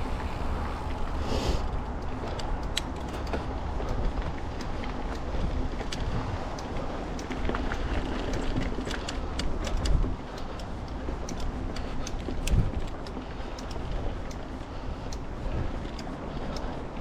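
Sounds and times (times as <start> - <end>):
bike clicking and rattling: 0.0 - 1.2, 1.9 - 17.0
tyres rumbling on trail: 0.0 - 1.8.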